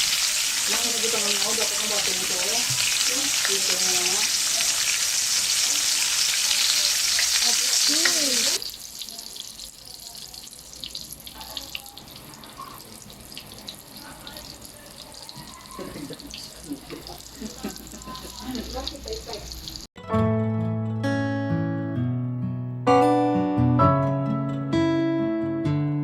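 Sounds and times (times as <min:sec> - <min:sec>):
patties sizzling in hot oil: 0:00.0 - 0:19.9.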